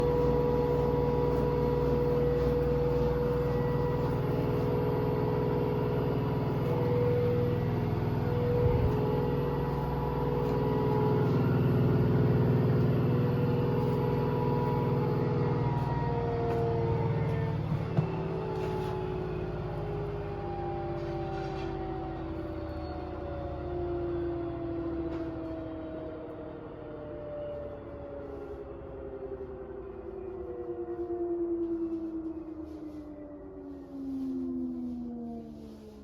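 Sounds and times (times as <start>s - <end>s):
low rumble: 0.0s - 19.4s
washing machine motor whine: 0.0s - 36.0s.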